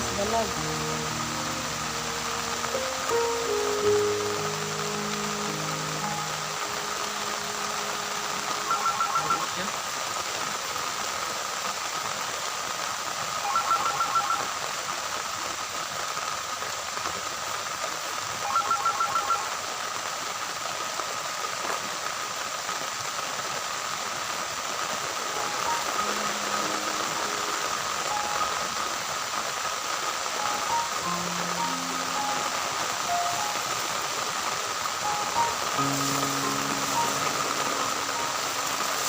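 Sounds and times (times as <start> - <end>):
steady hiss: 0.0 - 13.6, 19.6 - 39.0
stepping electronic tones: 6.2 - 9.7
rapid electronic beeps: 8.6 - 9.6.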